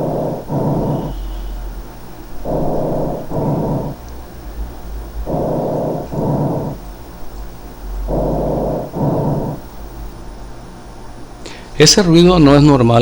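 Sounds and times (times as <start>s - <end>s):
harsh breath sounds: 0.0s - 10.1s.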